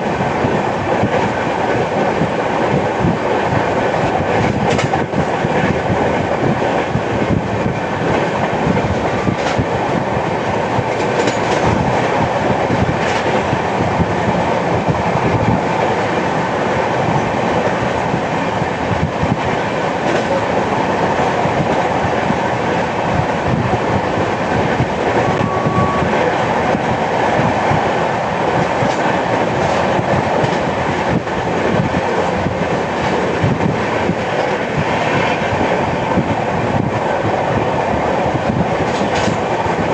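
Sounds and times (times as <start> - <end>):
train wheels rumbling on rail: 0.0 - 39.9
rapid clicks from rail joints: 3.6 - 5.8, 8.0 - 9.7, 10.8 - 13.6, 19.4 - 20.4, 28.5 - 36.3, 38.6 - 39.9.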